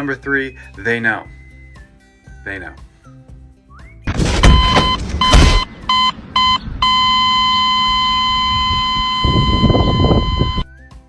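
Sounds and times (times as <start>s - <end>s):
electronic beep: 4.4s - 10.7s.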